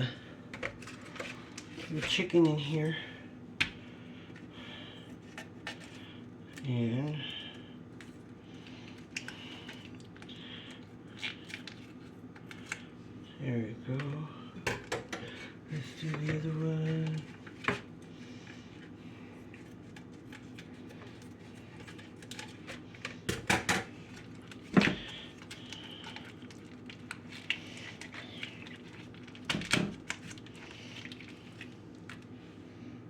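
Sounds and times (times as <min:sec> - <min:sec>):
plastic package crinkling: 0:24.0 - 0:32.3.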